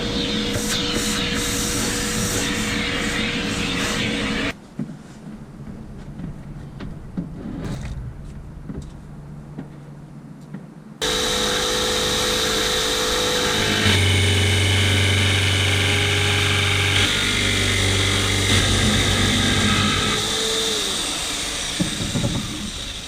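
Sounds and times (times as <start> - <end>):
power tool running: 11.0 - 23.0.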